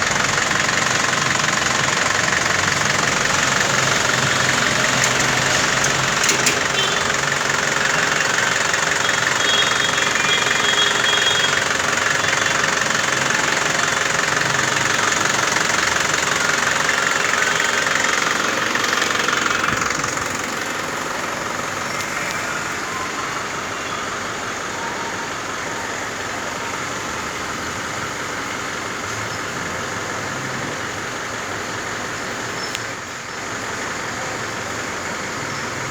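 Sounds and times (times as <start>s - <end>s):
car engine running: 0.0s - 23.0s.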